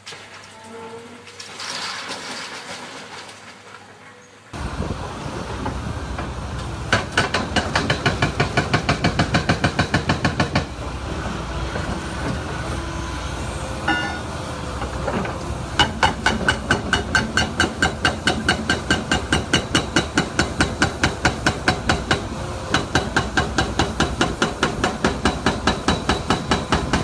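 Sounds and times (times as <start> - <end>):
heavy machine rumbling: 4.6 - 18.5.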